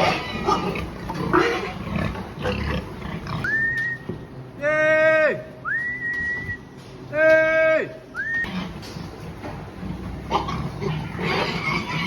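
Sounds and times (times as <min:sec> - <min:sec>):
pigs squealing: 0:00.0 - 0:04.0, 0:10.2 - 0:12.0.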